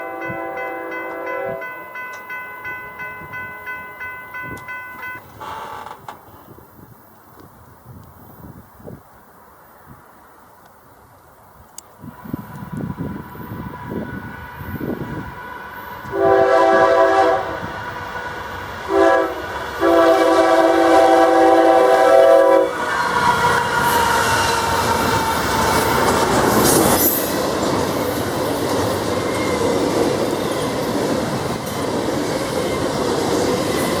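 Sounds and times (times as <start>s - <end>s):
locomotive air horn: 0.0s - 1.7s, 12.0s - 18.2s, 18.9s - 25.6s
train wheels on rails: 10.0s - 34.0s.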